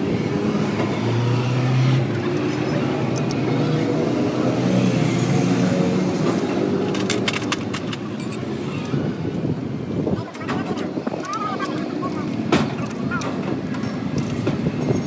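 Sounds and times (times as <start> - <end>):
truck engine revving: 0.0 - 7.3.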